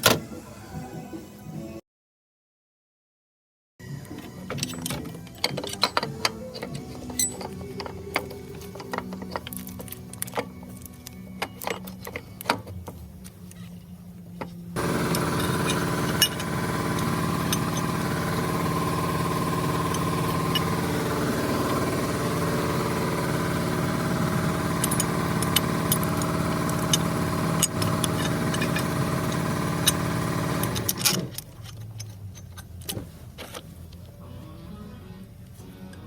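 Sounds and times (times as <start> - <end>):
small motor humming: 14.8 - 31.0.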